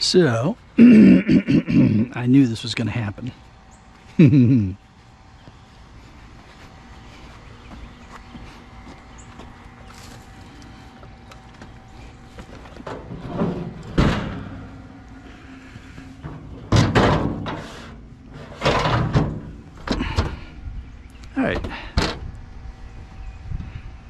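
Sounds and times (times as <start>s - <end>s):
heavy thumps and clunks of scrap: 12.4s - 14.7s, 15.9s - 20.5s
scraping of scrap metal: 12.5s - 20.5s.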